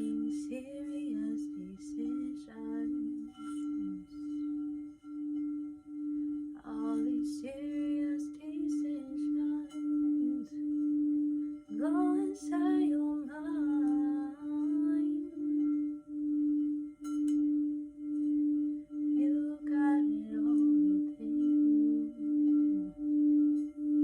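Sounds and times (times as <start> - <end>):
person singing: 0.0 - 5.2, 6.6 - 10.9, 11.5 - 16.1, 18.9 - 23.6
singing bowl tone: 0.0 - 24.0.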